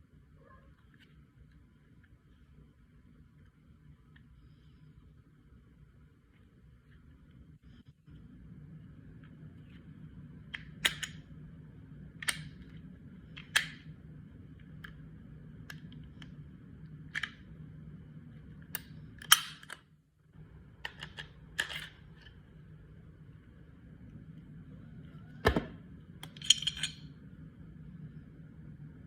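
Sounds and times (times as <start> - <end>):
steady low hum: 0.0 - 29.0
pistol parts clicking: 10.5 - 11.2, 18.8 - 19.8, 26.2 - 27.0.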